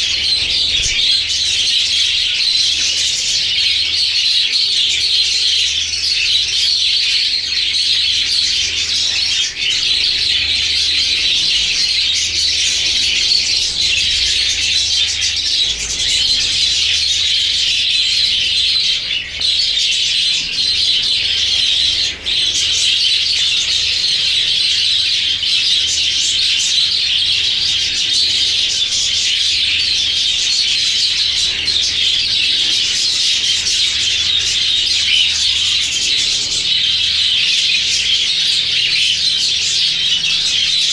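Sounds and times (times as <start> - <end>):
budgerigars chattering: 0.0 - 40.9.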